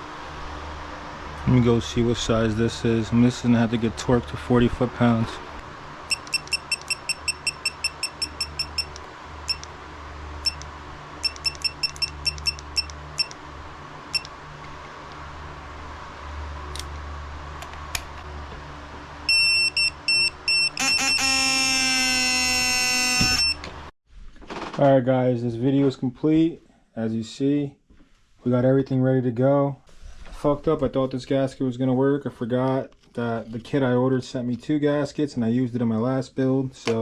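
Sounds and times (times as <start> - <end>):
steady low hum: 0.0 - 23.7
loud continuous beep: 6.1 - 9.7, 10.4 - 10.6, 11.2 - 13.4, 19.3 - 23.6
torque wrench beeping: 6.1 - 9.7, 10.4 - 10.6, 11.2 - 13.4, 19.3 - 23.7.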